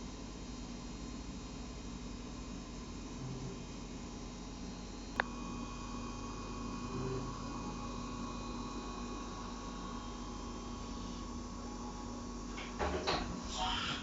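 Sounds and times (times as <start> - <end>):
milling machine hum and whine: 0.0 - 14.0.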